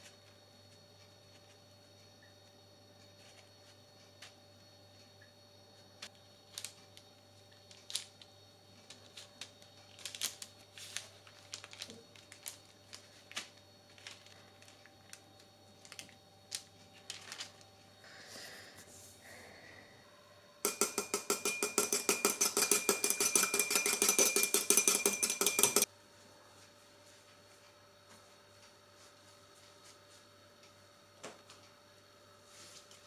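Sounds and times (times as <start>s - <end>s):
utensil beating against a bowl: 20.6s - 25.9s.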